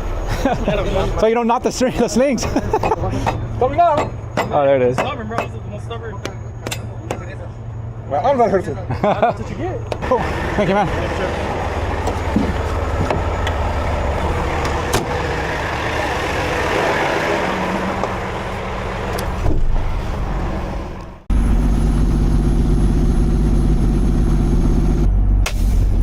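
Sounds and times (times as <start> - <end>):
heavy diesel truck engine: 0.0 - 26.0.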